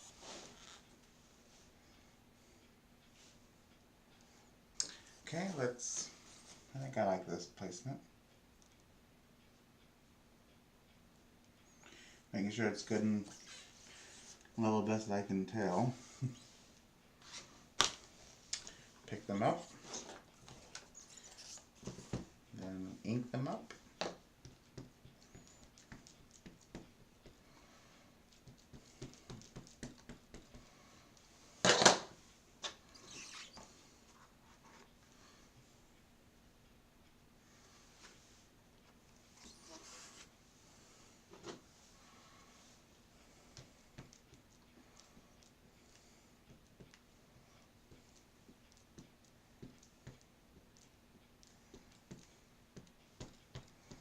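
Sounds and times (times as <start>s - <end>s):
light stamping clicks and taps: 23.6s - 27.6s, 28.3s - 30.7s, 43.4s - 54.0s.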